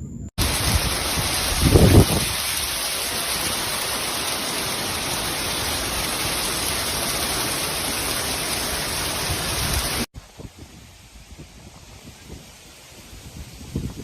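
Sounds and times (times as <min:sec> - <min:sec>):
wind: 0:00.0 - 0:14.0
heavy rain pouring: 0:00.4 - 0:10.1.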